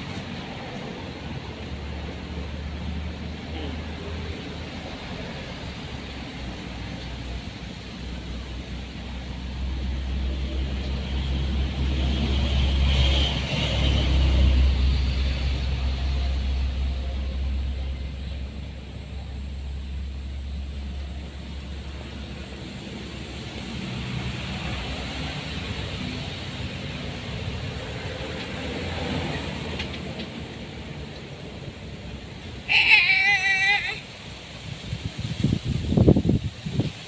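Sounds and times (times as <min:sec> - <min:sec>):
vehicle engine passing by: 0:00.0 - 0:37.0.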